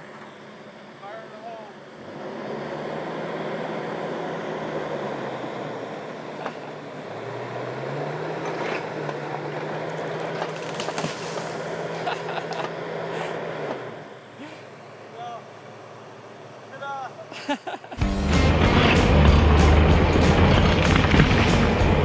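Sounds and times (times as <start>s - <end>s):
excavator engine revving: 2.0s - 14.1s, 18.0s - 22.0s
wood cracking and snapping: 9.9s - 12.8s.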